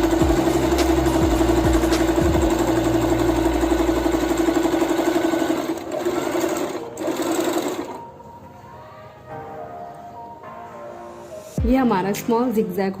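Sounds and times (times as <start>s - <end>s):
sewing machine running: 0.0s - 8.0s.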